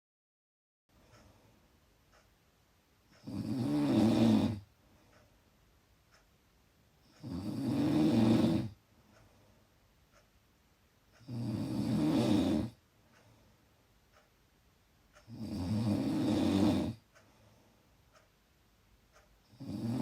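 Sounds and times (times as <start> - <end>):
quiet breathing: 0.9 - 2.4, 3.1 - 6.3, 7.0 - 10.4, 11.0 - 14.4, 15.1 - 18.4
loud snoring: 3.2 - 4.7, 7.2 - 8.8, 11.2 - 12.8, 15.2 - 17.0, 19.5 - 20.0.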